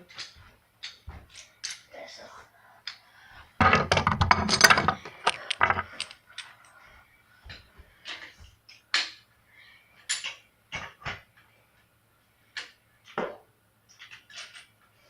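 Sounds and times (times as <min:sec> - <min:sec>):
metal tools clinking and knocking: 0:03.6 - 0:06.8, 0:10.0 - 0:10.4, 0:13.9 - 0:14.7.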